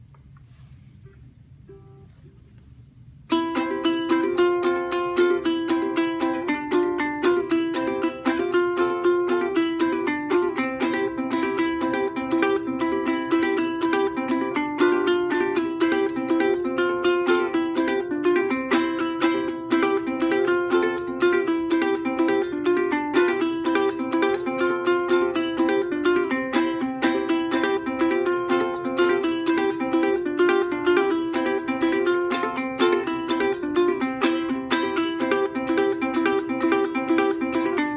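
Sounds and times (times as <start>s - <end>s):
resonator ukulele picking: 0.5s - 2.4s, 3.2s - 37.9s.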